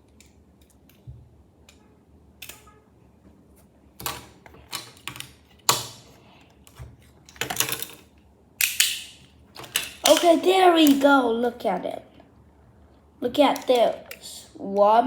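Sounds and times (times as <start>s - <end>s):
handling clicks and knocks: 9.6s - 11.1s.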